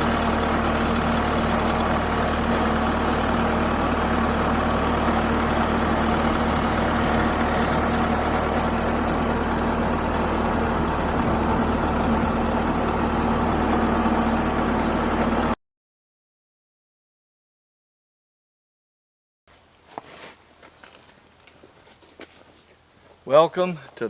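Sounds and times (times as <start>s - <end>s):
tractor diesel engine running: 0.0s - 15.6s.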